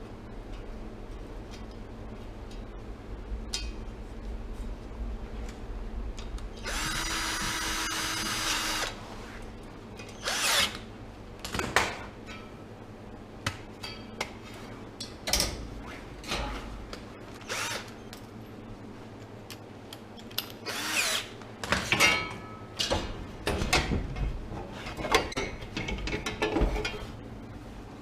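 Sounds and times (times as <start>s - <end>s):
cordless drill running: 6.6s - 9.0s, 17.4s - 17.9s
parts clicking and clattering: 21.4s - 27.1s.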